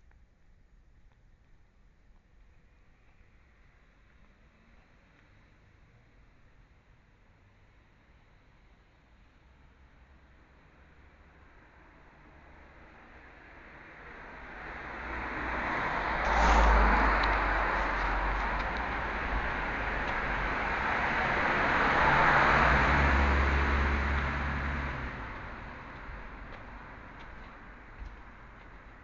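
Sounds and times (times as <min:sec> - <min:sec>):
cars passing on road: 0:02.7 - 0:29.0.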